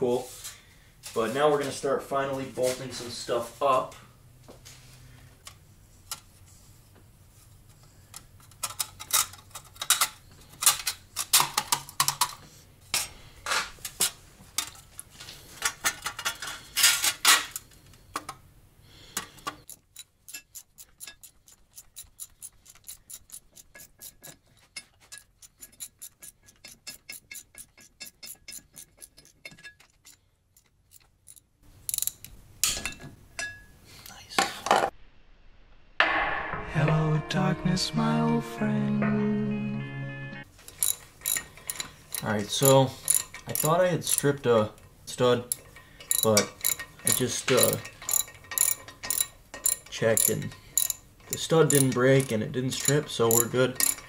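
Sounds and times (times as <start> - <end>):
tools and parts clinking: 7.6 - 18.4, 19.2 - 33.8, 40.6 - 54.0
ratchet wrench clicking: 19.6 - 24.4, 25.2 - 32.4, 40.7 - 44.4, 45.4 - 54.0.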